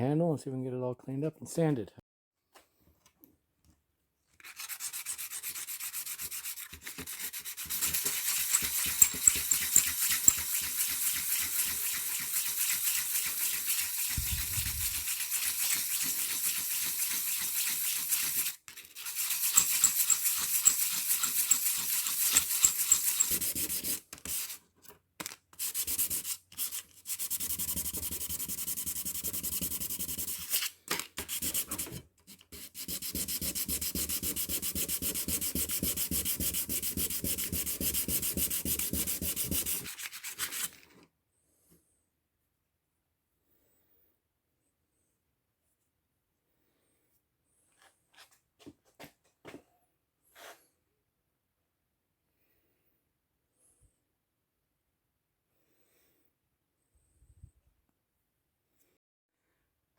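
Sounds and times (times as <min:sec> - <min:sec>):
steel being ground and sanded: 0:04.5 - 0:24.5, 0:32.6 - 0:40.7.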